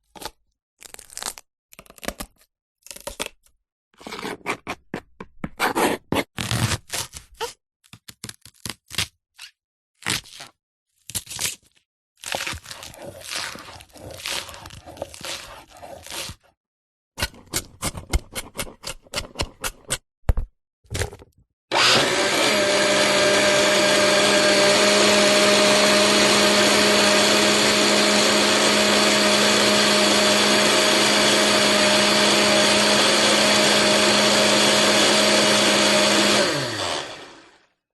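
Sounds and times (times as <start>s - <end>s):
food crunching as cut: 0.0s - 3.5s, 10.0s - 16.5s
kitchen blender running: 21.7s - 37.8s.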